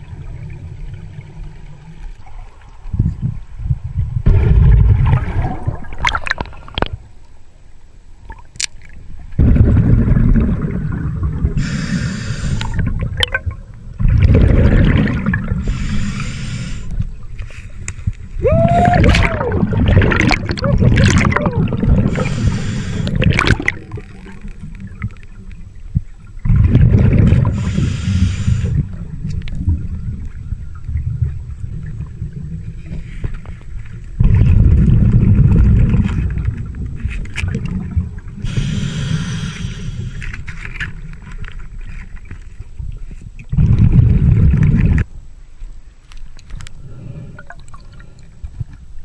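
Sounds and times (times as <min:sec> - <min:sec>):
exhaled bubbles rumbling: 0:00.0 - 0:07.1, 0:09.2 - 0:45.1
murky underwater background: 0:00.0 - 0:45.1
diver inhaling through regulator: 0:11.6 - 0:12.8, 0:15.6 - 0:17.8, 0:21.9 - 0:23.6, 0:27.4 - 0:28.9, 0:38.4 - 0:40.4.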